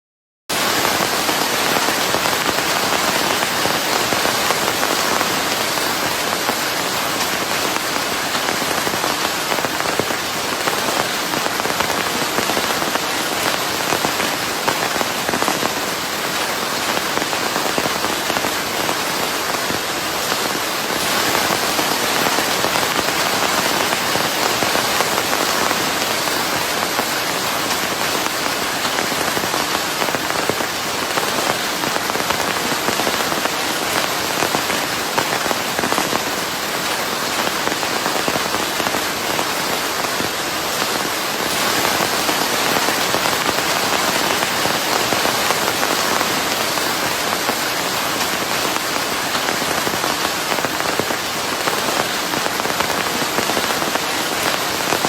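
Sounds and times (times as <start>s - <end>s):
steady rain: 0.5s - 55.0s.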